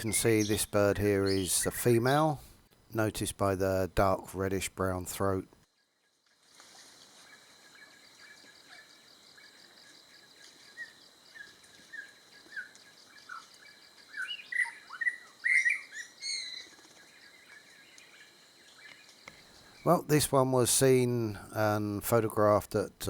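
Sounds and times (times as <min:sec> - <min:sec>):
birds whistling and chirping: 0:00.0 - 0:01.8, 0:14.1 - 0:16.7.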